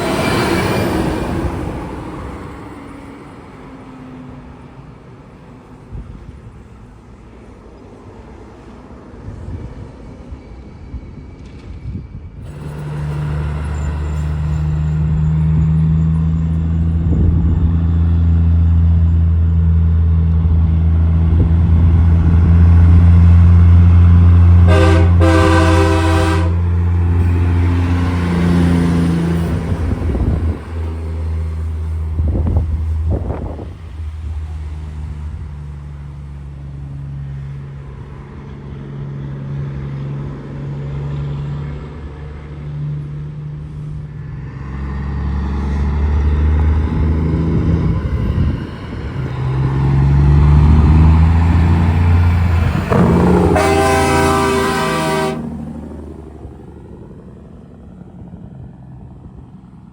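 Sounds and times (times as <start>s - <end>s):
heavy diesel engine passing: 0.0s - 10.5s, 11.5s - 59.9s
short horn blast: 24.6s - 28.1s, 52.7s - 55.8s.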